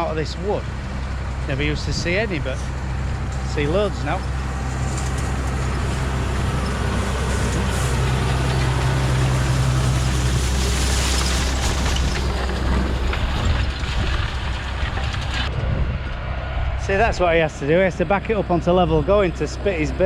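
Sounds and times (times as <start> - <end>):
tractor engine running under load: 0.0 - 16.6.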